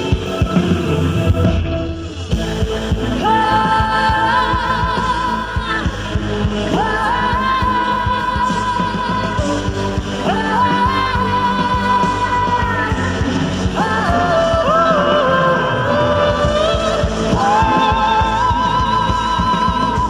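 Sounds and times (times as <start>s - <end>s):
band with steady drum beat: 0.0s - 15.0s.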